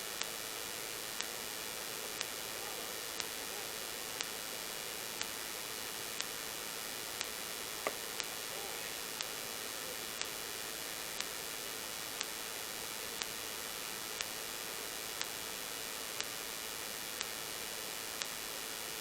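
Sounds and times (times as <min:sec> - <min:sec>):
recording noise hiss: 0:00.0 - 0:19.0
faint clicks: 0:00.2 - 0:11.5.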